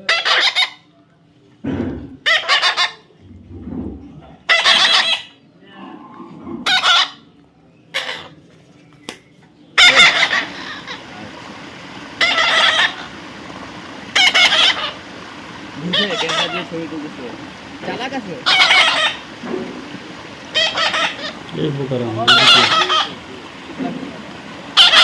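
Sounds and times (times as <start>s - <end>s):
parrot harsh calls: 0.0s - 0.9s, 2.2s - 3.1s, 4.4s - 5.4s, 6.6s - 7.3s, 7.9s - 8.4s, 9.8s - 25.0s.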